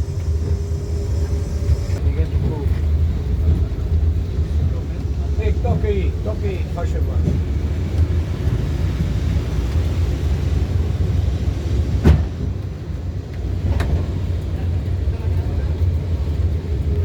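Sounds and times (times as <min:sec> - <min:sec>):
tram rumbling: 0:00.0 - 0:17.0.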